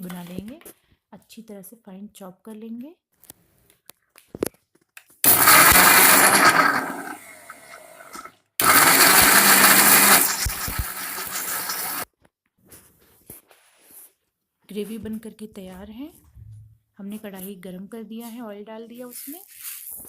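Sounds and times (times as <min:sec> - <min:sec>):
mixer grinder grinding: 0:05.2 - 0:12.1.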